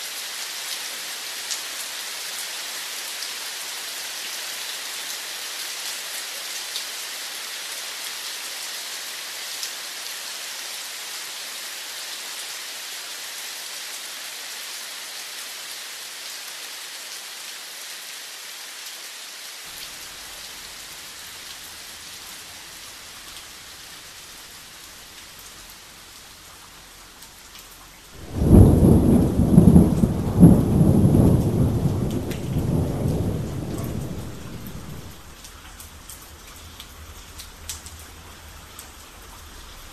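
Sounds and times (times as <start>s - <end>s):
steady rain hissing: 0.0s - 39.9s
thunder clap rumbling: 28.2s - 35.3s.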